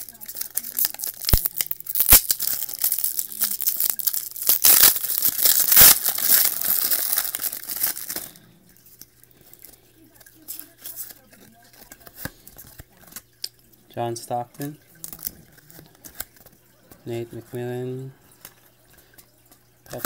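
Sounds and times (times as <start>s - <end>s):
card pack wrapper crinkling: 0.0s - 13.6s.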